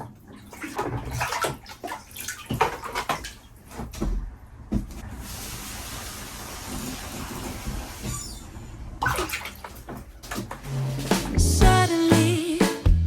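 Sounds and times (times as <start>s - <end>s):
water sloshing and splashing: 0.0s - 11.4s
pouring water rushing: 5.2s - 8.0s.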